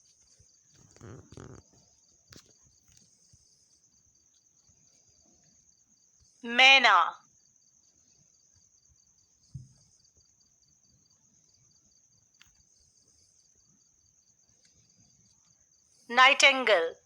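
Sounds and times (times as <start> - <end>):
high-pitched cricket-like chirping: 0.0 - 17.0
soft low thump: 9.5 - 9.8.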